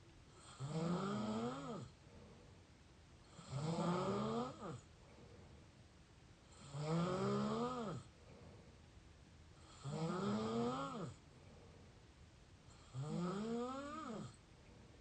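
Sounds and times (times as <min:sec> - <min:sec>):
quiet breathing: 0:00.0 - 0:15.0
person snoring: 0:00.4 - 0:01.9, 0:03.3 - 0:04.8, 0:06.5 - 0:08.1, 0:09.6 - 0:11.2, 0:12.7 - 0:14.4.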